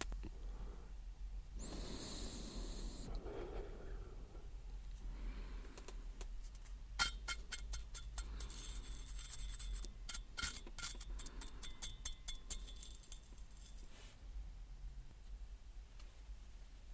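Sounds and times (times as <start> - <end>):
burning cigarette crackling: 1.6 - 3.1
faint hiss of drag: 1.6 - 3.2, 12.8 - 14.2.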